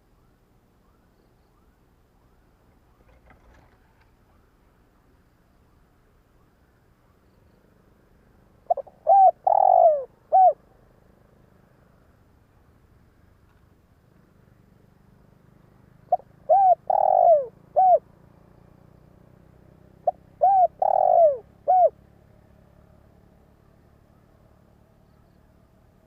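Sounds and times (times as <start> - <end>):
faint low hum: 0.0 - 26.0
dove cooing: 8.6 - 10.8, 16.0 - 18.1, 20.0 - 22.0.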